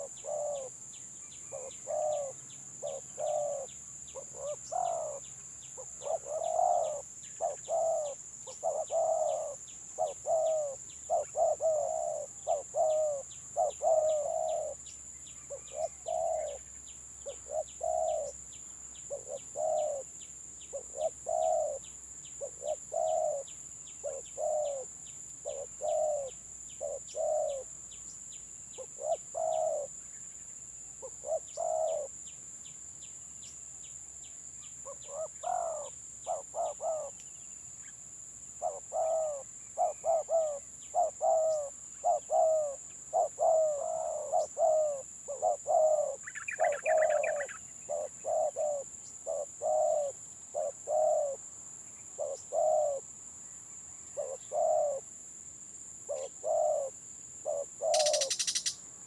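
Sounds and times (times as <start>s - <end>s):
doves cooing: 0.0s - 0.8s, 1.5s - 14.8s, 15.5s - 18.4s, 19.1s - 20.1s, 20.7s - 21.8s, 22.4s - 27.7s, 28.8s - 29.9s, 31.1s - 32.1s, 35.0s - 37.2s, 38.6s - 51.4s, 52.2s - 53.0s, 54.2s - 55.0s, 56.1s - 58.7s.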